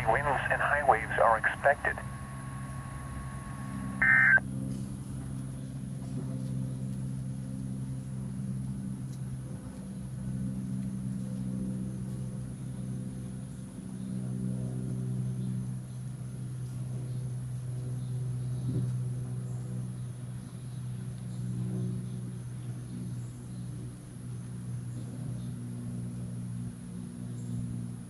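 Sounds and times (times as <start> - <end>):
low steady hum: 0.0 - 4.8
digital data tones: 1.4 - 4.4.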